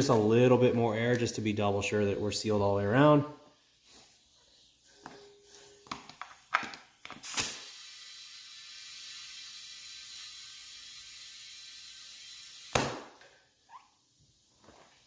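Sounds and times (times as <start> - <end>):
compressed air hissing into tire: 7.2 - 12.7.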